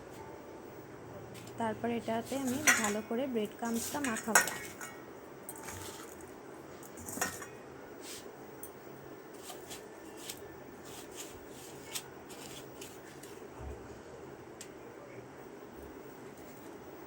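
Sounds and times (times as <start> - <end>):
soft rustling: 1.4 - 4.9
dish and utensil tapping: 2.4 - 3.0.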